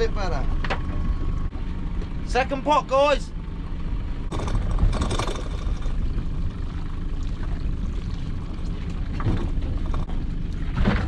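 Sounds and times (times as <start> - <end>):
boat engine rumble: 0.0 - 11.0
water pouring and splashing: 6.6 - 11.0.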